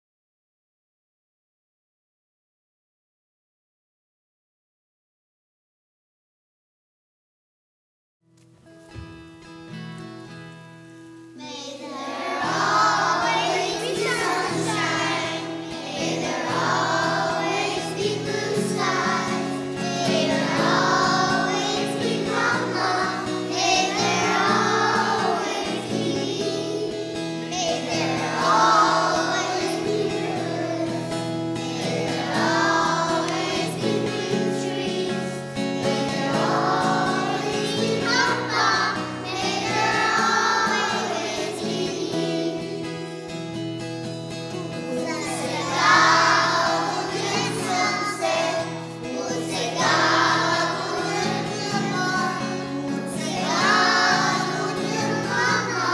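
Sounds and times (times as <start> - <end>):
choir-like singing with accompaniment: 11.3 - 43.5, 44.7 - 55.9.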